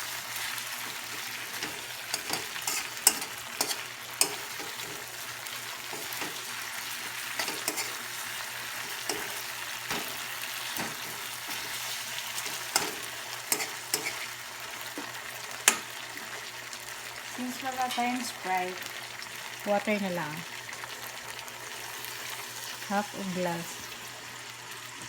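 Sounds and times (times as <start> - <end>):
chicken wings sizzling in pan: 0.0 - 25.0
utensil clicking against pan: 1.6 - 5.0, 7.4 - 8.0, 12.4 - 14.3, 15.0 - 15.9.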